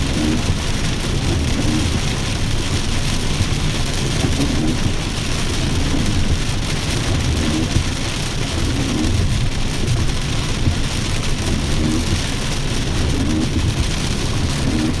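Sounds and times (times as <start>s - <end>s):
low rumble: 0.0s - 15.0s
rain falling: 0.0s - 15.0s.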